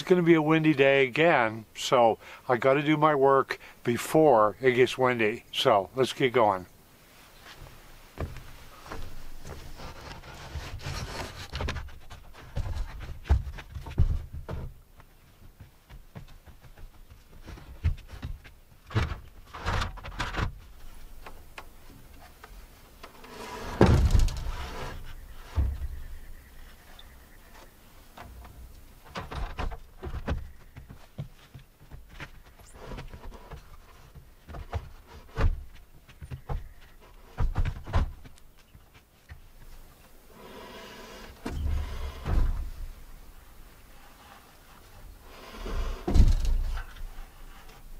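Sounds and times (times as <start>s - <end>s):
wooden knocks and thumps: 7.5s - 26.2s, 27.5s - 39.8s, 41.4s - 43.1s, 45.7s - 47.9s.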